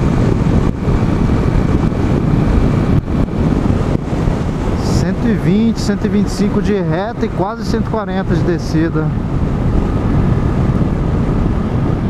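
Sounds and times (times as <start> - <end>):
motorcycle engine running hard: 0.0 - 8.3
wind buffeting microphone: 0.0 - 12.0.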